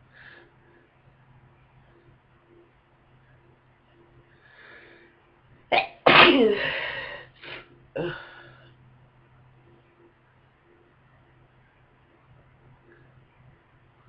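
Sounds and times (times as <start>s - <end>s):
person sneezing: 5.7s - 7.2s.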